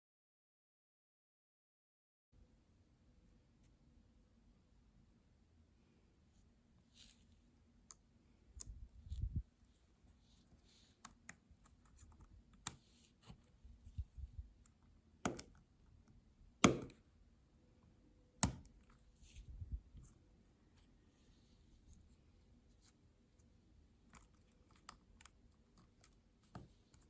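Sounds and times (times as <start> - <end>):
small plastic clicks and taps: 14.7 - 15.6, 18.4 - 19.0.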